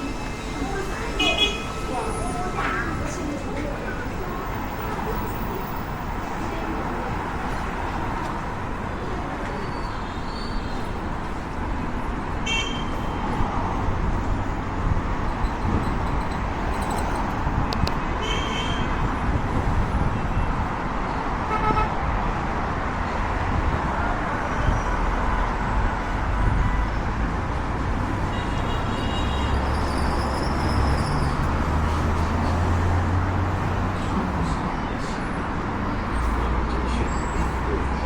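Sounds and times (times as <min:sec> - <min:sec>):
city street traffic: 0:00.0 - 0:38.0
vehicle horn toots: 0:12.4 - 0:12.9, 0:21.5 - 0:21.9
vehicle rumbling by: 0:29.3 - 0:38.0.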